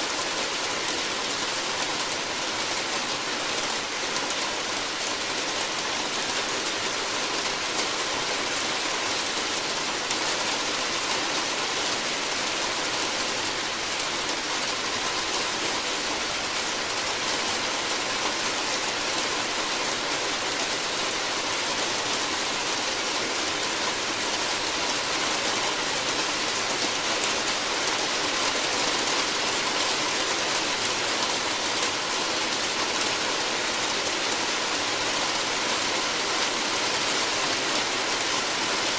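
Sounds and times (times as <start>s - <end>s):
rain falling on a roof: 0.0s - 38.9s.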